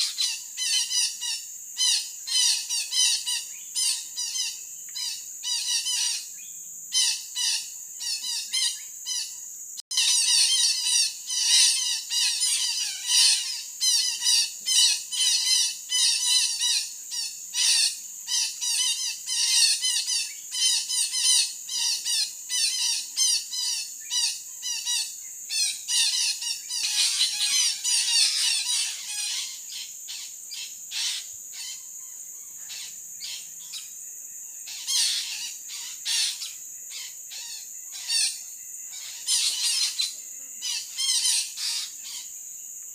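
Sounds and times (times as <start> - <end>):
parakeets squawking: 25.8 - 31.8, 34.7 - 38.4, 39.0 - 42.2.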